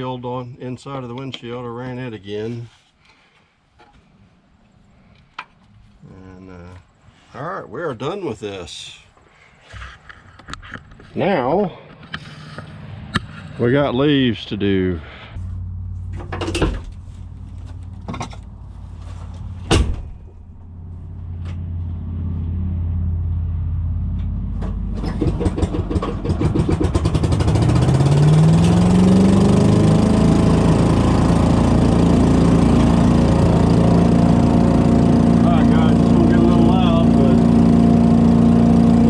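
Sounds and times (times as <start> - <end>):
low hum: 11.8 - 39.0
engine cranking and running: 15.4 - 22.6, 23.2 - 39.0
sharp knocks: 24.6 - 27.4.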